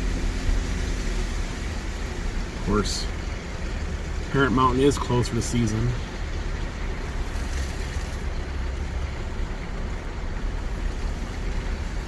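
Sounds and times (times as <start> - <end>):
engine and tyre rumble: 0.0 - 12.0
tyre hiss on road: 7.0 - 9.4.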